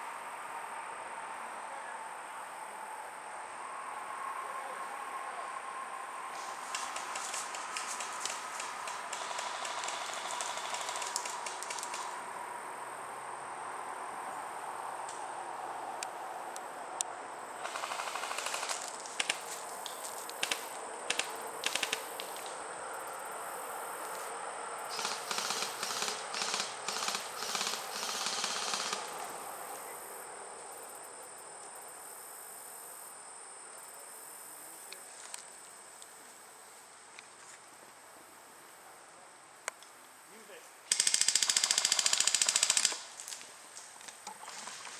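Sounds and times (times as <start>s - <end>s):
high insect drone: 0.0s - 44.9s
airsoft guns firing: 6.7s - 12.1s, 17.6s - 19.4s, 24.9s - 29.2s.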